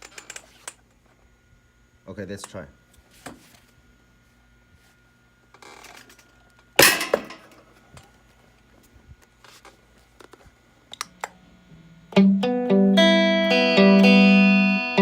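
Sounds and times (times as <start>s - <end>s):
distorted electric guitar notes: 11.6s - 15.0s.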